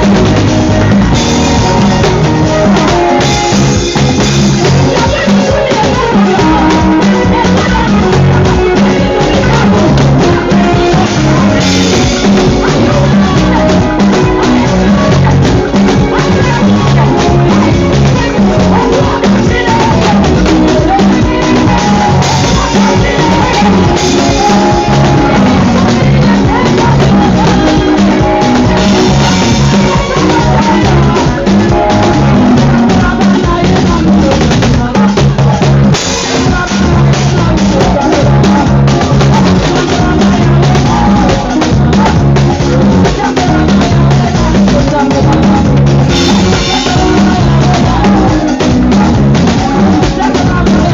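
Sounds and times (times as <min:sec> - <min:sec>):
loud music with drums and bass: 0:00.0 - 0:50.9
person singing: 0:00.0 - 0:50.9.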